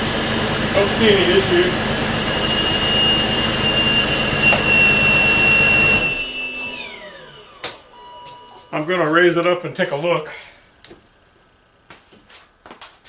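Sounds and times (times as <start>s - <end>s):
car engine whining: 0.0s - 10.0s.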